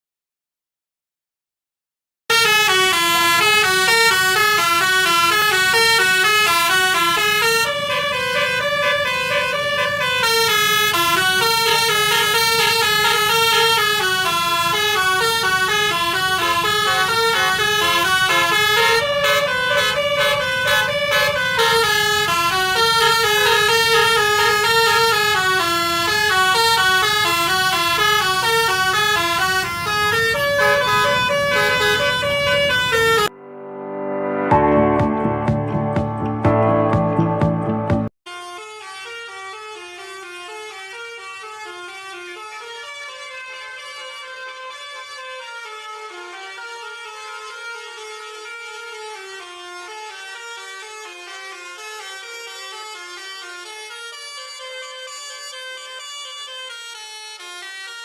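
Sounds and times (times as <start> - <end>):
bus air horn playing a tune: 2.3 - 33.3, 38.3 - 58.0.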